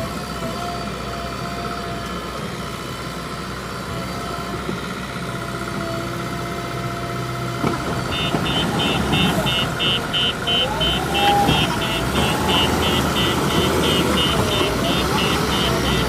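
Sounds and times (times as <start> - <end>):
heavy machinery engine running: 0.0 - 16.0
rapid beeping: 8.1 - 16.0.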